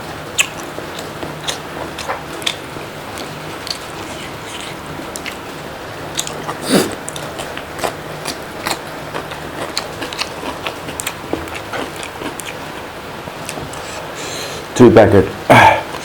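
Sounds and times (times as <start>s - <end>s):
person chewing food: 0.3s - 14.6s
wet mouth clicks and smacks: 0.4s - 2.6s.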